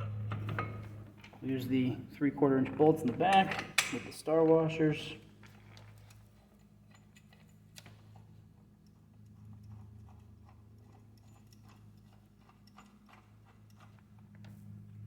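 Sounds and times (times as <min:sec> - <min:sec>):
light clicking of tools on bolts: 0:05.9 - 0:14.6.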